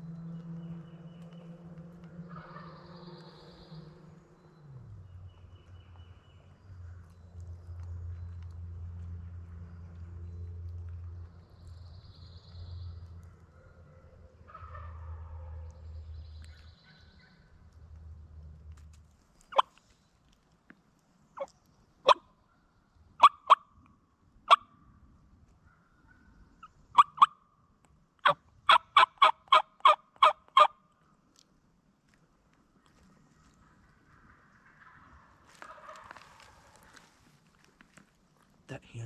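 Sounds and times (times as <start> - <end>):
low rumble: 0.0 - 19.2
turkey clucking: 14.5 - 15.5, 28.2 - 30.7, 34.8 - 37.1.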